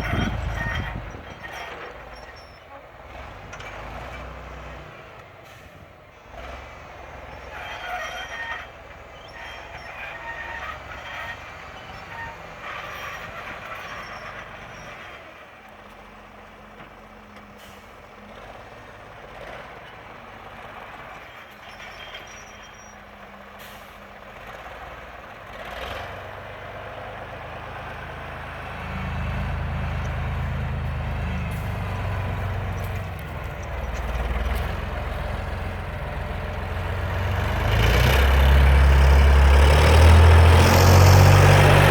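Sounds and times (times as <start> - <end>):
road noise: 0.0 - 41.9
vehicle engine running: 27.3 - 41.9.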